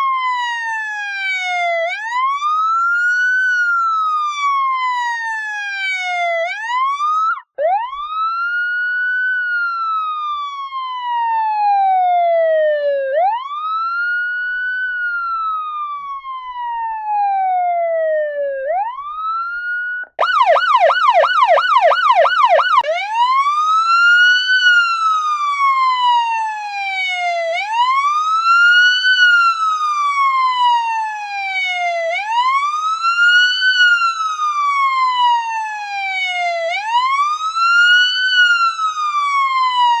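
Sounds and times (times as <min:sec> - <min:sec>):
police siren wailing: 0:00.0 - 0:40.0
police siren yelp: 0:00.0 - 0:40.0.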